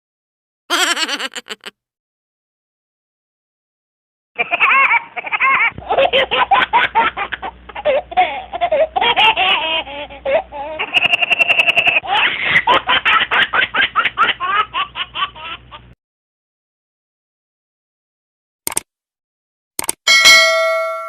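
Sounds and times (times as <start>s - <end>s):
repeated laughing pulses: 0.7s - 1.7s.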